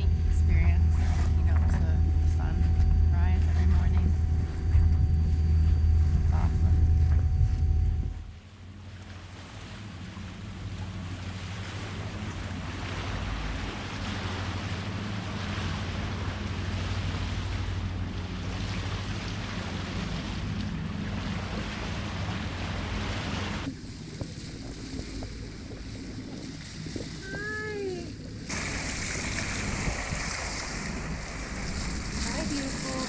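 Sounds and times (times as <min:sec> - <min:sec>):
wind on microphone: 0:00.0 - 0:08.3, 0:21.1 - 0:33.0
low engine hum: 0:00.0 - 0:33.0
water rushing past hull: 0:00.0 - 0:33.0.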